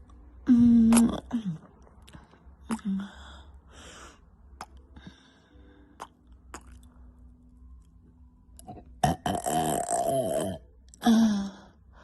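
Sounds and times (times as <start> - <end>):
wet mouth clicks and lip smacks: 4.6 - 4.9, 6.0 - 6.9
woman belching loudly: 9.0 - 11.1.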